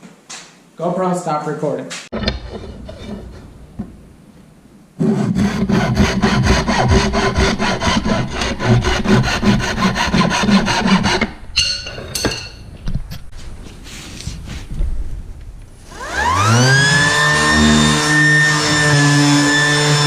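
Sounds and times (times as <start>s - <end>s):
hand saw cutting wood: 5.0s - 11.4s.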